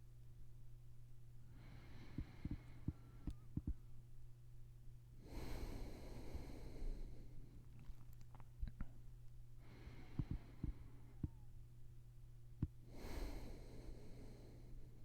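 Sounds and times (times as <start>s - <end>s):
faint low hum: 0.0s - 15.0s
slow soft breathing: 1.5s - 3.8s, 5.2s - 8.1s, 9.6s - 11.4s, 12.8s - 15.0s.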